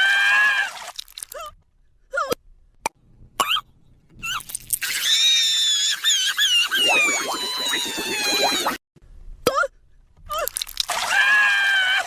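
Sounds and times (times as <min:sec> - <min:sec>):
short squeaks and clicks: 0:04.2 - 0:08.8
cartoon crying wail: 0:04.8 - 0:08.8.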